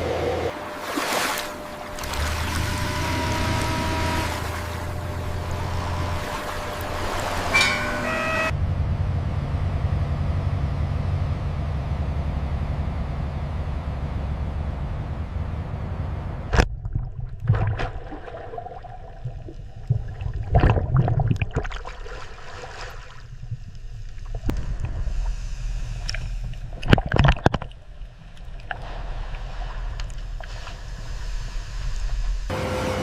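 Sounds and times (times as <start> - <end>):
water sloshing and gurgling: 0.0 - 8.2, 16.4 - 32.5
steady low hum: 0.0 - 33.0
sharp knocks and splashes: 0.8 - 8.0, 16.5 - 25.0, 26.0 - 31.2.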